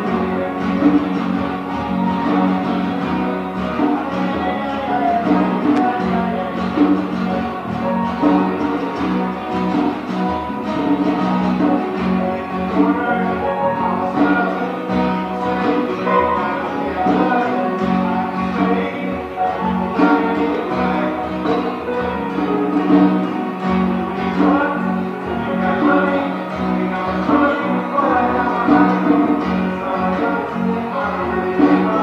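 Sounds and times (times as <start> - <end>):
guitar music: 0.0 - 32.0.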